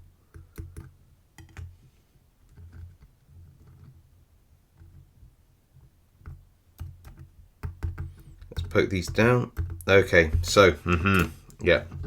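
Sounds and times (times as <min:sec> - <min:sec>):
small metal clicks and taps: 0:00.3 - 0:01.7.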